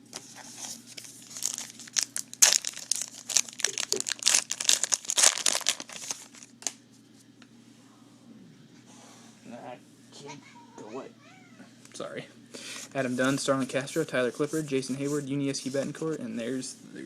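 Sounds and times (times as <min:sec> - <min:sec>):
wrapper tearing and crinkling: 0:01.2 - 0:06.8.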